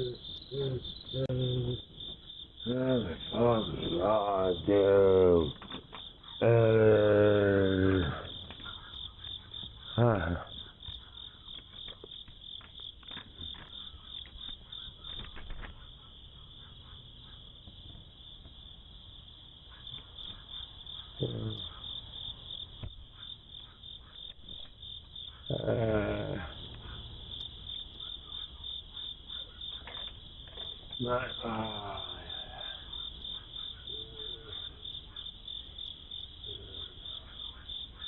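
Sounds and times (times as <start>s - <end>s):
insects chirping: 0.0s - 38.0s.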